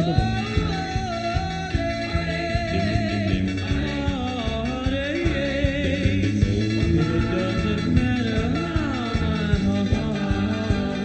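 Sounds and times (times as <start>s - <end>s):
doo-wop style rock song: 0.0s - 11.0s.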